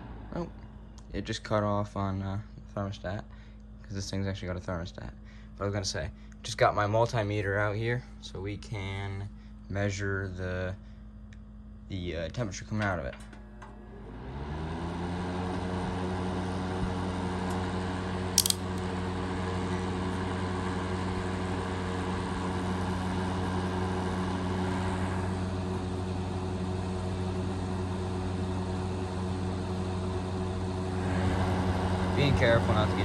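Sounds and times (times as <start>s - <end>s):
heater fan motor hum: 0.0s - 33.0s
short sharp click: 18.4s - 18.8s.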